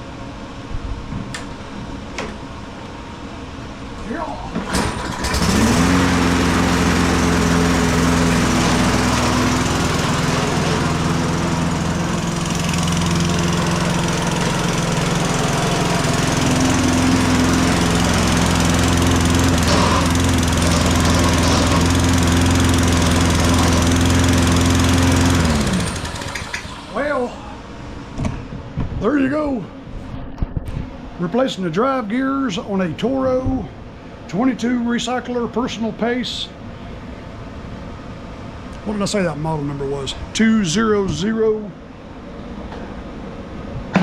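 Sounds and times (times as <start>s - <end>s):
lawn mower engine running: 4.6s - 27.3s.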